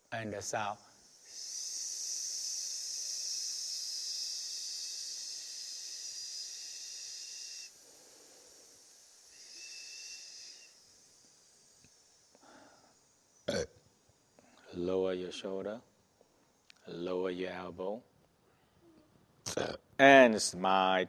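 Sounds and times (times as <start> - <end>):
person hissing through teeth: 1.0 - 13.7.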